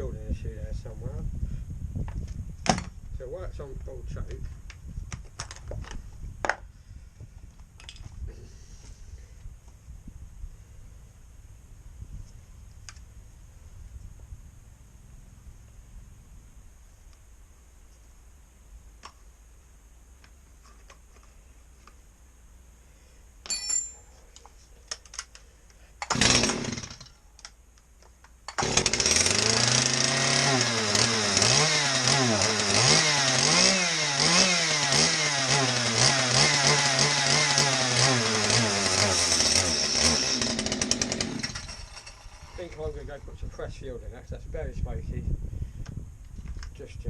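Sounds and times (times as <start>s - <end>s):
chainsaw engine running: 26.0s - 27.1s, 28.5s - 42.9s.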